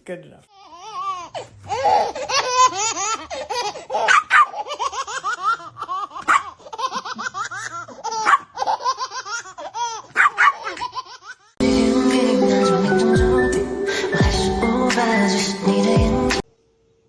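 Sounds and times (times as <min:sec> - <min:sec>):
high-pitched hearty laughter: 0:02.2 - 0:11.4.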